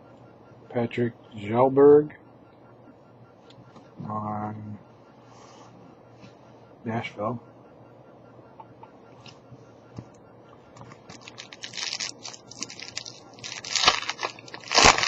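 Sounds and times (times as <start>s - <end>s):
card pack wrapper crinkling and tearing: 11.1s - 15.0s.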